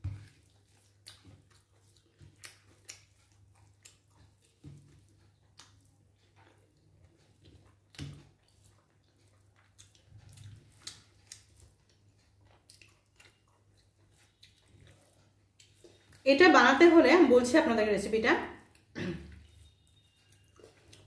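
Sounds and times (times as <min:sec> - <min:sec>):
person chewing food: 0:00.0 - 0:16.2, 0:18.6 - 0:21.0.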